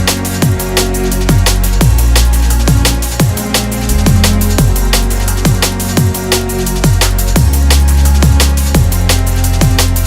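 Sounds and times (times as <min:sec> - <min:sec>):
drum and bass music: 0:00.0 - 0:10.0.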